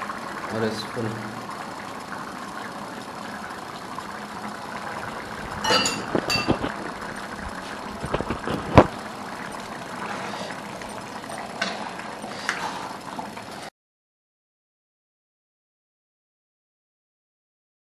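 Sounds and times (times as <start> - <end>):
metal spoon scraping a pan: 11.6 - 12.9.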